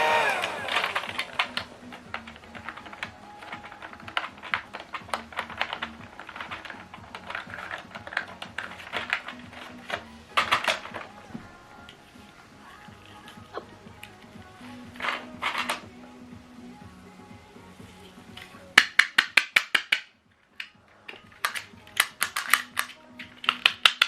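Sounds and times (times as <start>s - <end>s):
toy vacuum motor winding down: 0.0s - 10.9s.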